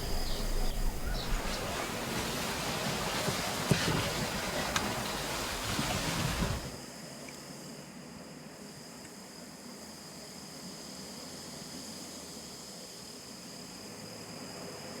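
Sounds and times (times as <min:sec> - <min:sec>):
insects trilling: 0:00.0 - 0:06.8.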